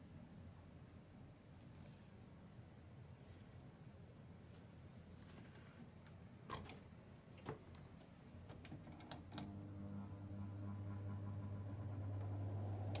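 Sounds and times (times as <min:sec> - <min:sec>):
spin-dryer motor humming: 0:09.2 - 0:13.0.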